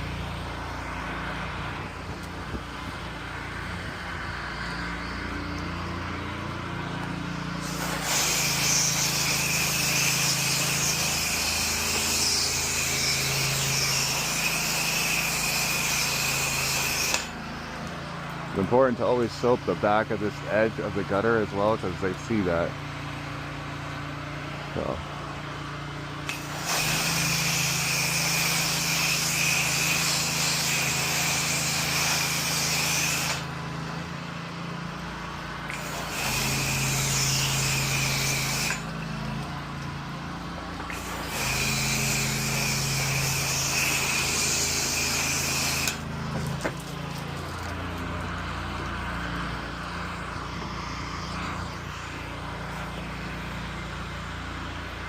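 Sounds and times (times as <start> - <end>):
pressure washer engine running: 0.0 - 55.0.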